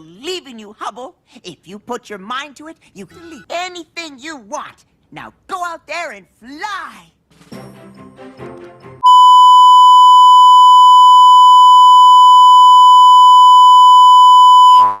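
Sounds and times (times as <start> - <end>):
buzzy electronic beep tone: 9.0 - 15.0.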